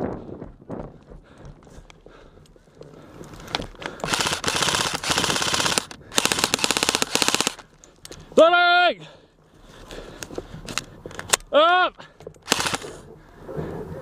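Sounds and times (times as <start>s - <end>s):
airsoft rifle full-auto bursts: 4.0s - 7.6s, 12.4s - 13.0s.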